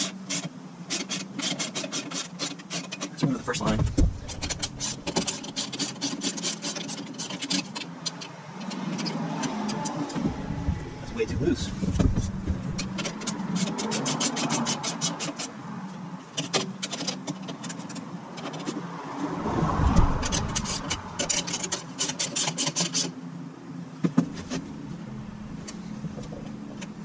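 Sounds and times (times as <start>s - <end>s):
steady low hum: 3.4s - 5.6s, 10.1s - 13.4s, 19.2s - 22.0s, 23.4s - 27.0s.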